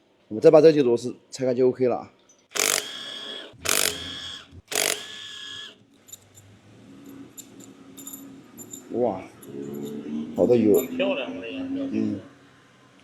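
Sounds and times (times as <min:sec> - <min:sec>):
power driver motor whine: 0:02.5 - 0:05.8.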